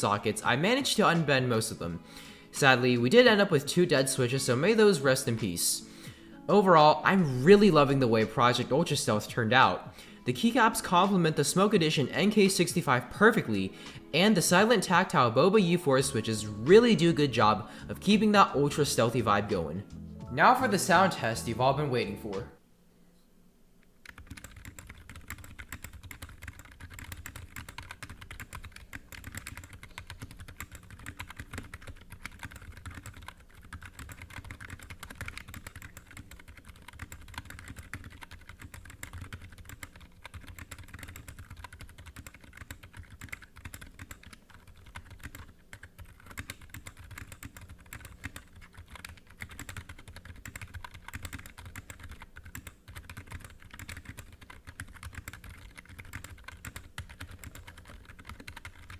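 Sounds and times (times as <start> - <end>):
mechanical keyboard typing: 24.0 - 58.9.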